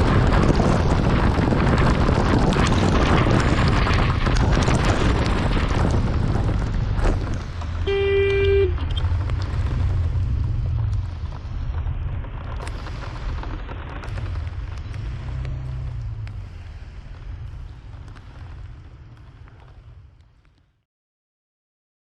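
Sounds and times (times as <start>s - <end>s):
wind buffeting microphone: 0.0s - 20.5s
road and traffic noise: 0.0s - 20.8s
vehicle horn beep: 7.8s - 8.8s.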